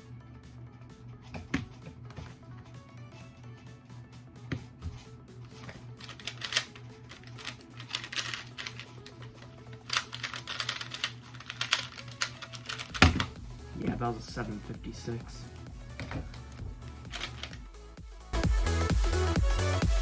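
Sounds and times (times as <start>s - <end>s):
quiet background music: 0.0s - 20.0s
speed cube clicking: 6.0s - 13.2s, 17.1s - 17.6s.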